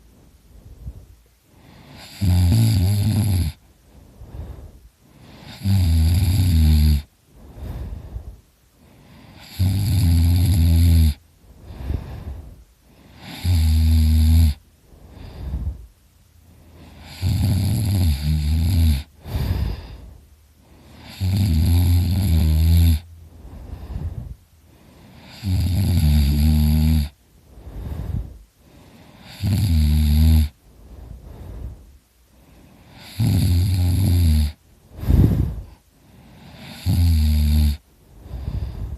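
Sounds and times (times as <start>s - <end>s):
quiet breathing: 0.0s - 38.9s
man snoring loudly: 1.8s - 3.6s, 5.4s - 7.1s, 9.4s - 11.2s, 13.2s - 14.6s, 16.9s - 20.0s, 21.0s - 23.1s, 25.1s - 27.2s, 29.2s - 30.6s, 32.9s - 35.6s, 36.4s - 37.8s.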